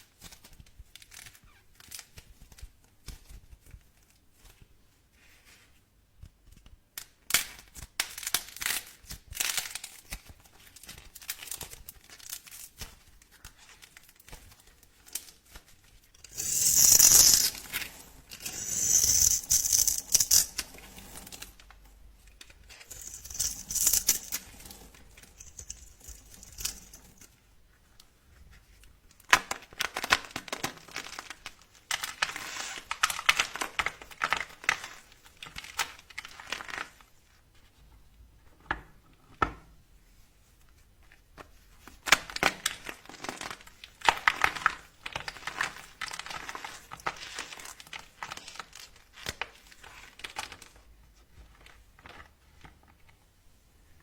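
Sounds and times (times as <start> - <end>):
dry soap crackling as it is cut: 7.0 - 21.8, 22.4 - 27.3, 42.0 - 50.8.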